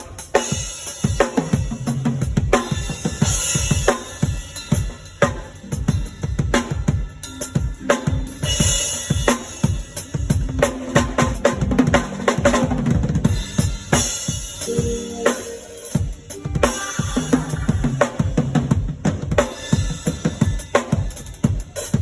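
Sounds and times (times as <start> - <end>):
drum kit playing fast: 0.0 - 22.0
held low instrument notes: 14.7 - 18.0.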